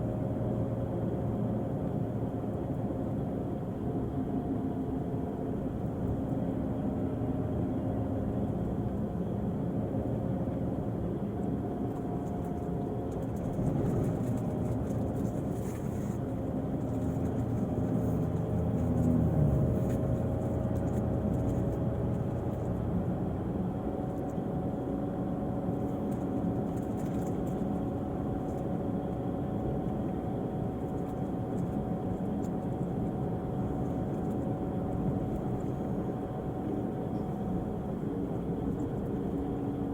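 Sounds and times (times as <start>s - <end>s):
diesel bus engine running: 12.8s - 39.9s.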